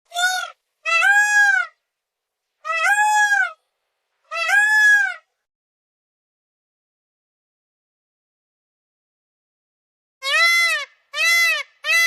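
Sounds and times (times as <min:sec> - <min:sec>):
peacock calling: 0:00.1 - 0:01.8, 0:02.6 - 0:03.6, 0:04.3 - 0:05.3, 0:10.2 - 0:12.0.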